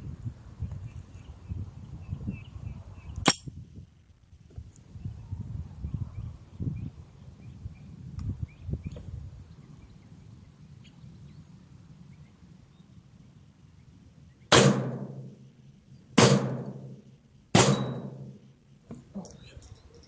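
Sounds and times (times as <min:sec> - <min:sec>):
rifle gunshots with echo: 0:14.5 - 0:15.4, 0:16.2 - 0:18.5.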